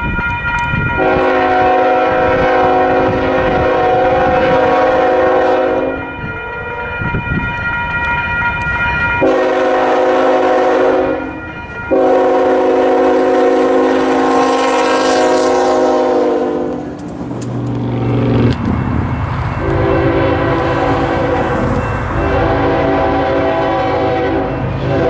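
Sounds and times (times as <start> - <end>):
rail clicks: 0.0 - 1.4, 5.8 - 23.4
train rumbling: 0.0 - 25.0
locomotive horn blasts: 0.8 - 7.2, 9.2 - 17.0, 19.6 - 25.0.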